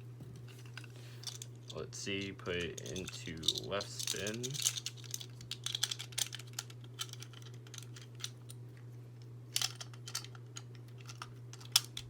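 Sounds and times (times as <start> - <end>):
steady low hum: 0.0 - 12.0
plastic toy launcher clicks and rattles: 2.6 - 8.3, 9.5 - 12.0.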